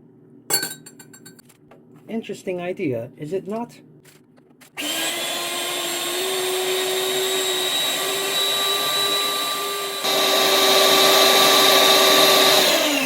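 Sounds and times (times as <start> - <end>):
electric hand mixer whining: 4.8 - 13.0.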